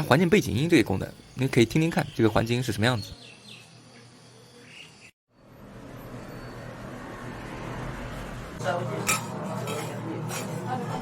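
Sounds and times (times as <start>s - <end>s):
street and traffic noise: 5.3s - 11.0s.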